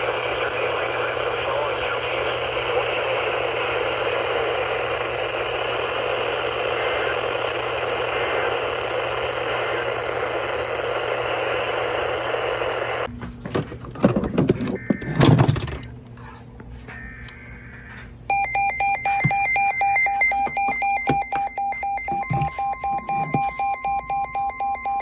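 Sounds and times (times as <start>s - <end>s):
radio static hiss: 0.0s - 13.1s.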